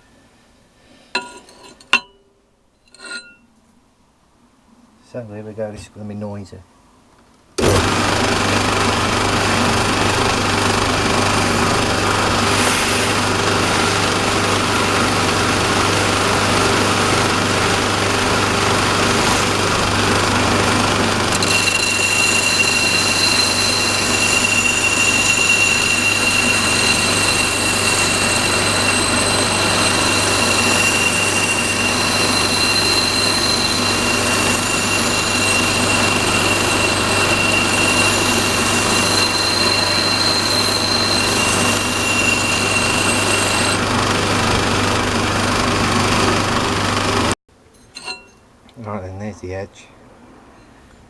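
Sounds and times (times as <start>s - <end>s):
high whine of metal grinding: 2.9s - 3.4s, 7.6s - 44.1s
grinder humming: 7.6s - 47.3s.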